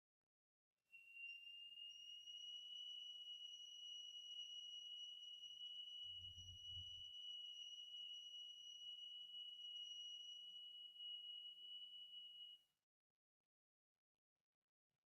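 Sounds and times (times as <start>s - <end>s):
faint high-pitched tone: 0.9s - 12.7s.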